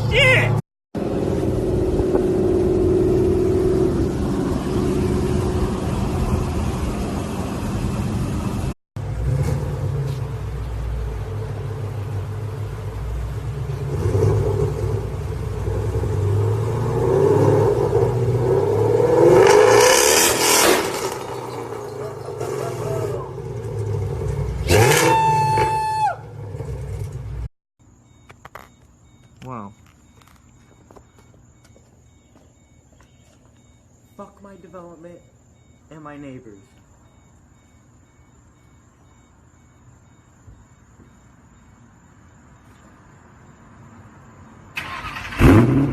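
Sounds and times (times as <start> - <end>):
car engines revving: 1.0 - 27.5, 44.3 - 45.9.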